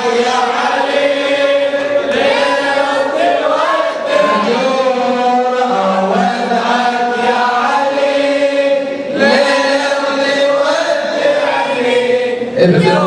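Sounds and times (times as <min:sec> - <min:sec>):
men chanting together: 0:00.0 - 0:13.0.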